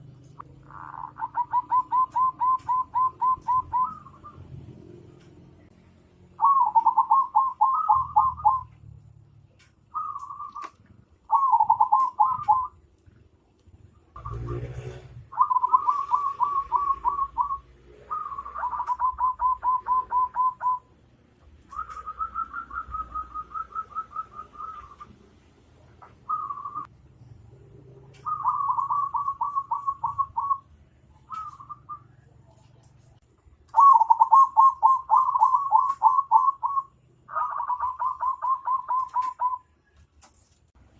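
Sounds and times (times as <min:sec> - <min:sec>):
bird calling in quick notes: 0:00.6 - 0:04.4, 0:09.9 - 0:12.8, 0:33.7 - 0:39.8.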